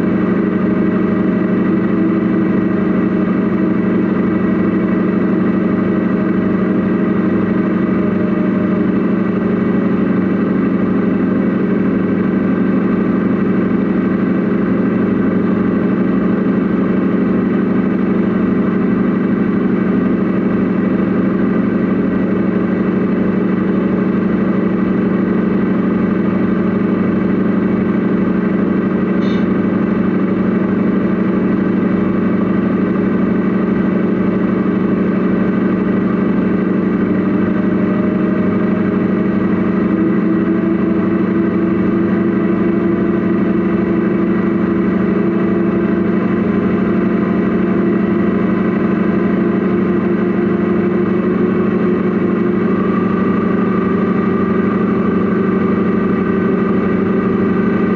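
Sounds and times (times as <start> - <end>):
model truck engine running: 0.0 - 57.9.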